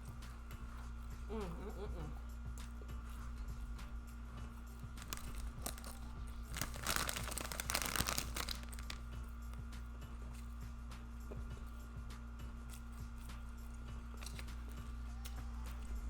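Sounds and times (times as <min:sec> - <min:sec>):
wrapper crinkling: 0:05.0 - 0:09.1
food crunching: 0:05.0 - 0:09.6, 0:12.6 - 0:15.9.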